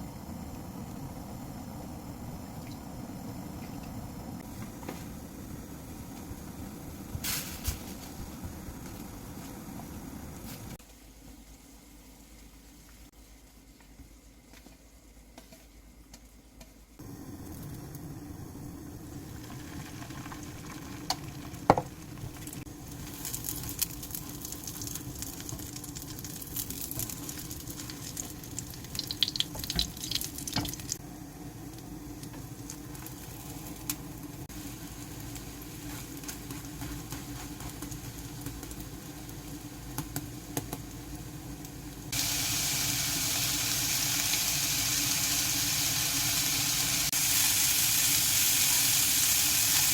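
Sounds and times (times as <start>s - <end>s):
low hum: 0.0s - 10.8s
loud steady hiss: 41.6s - 49.9s.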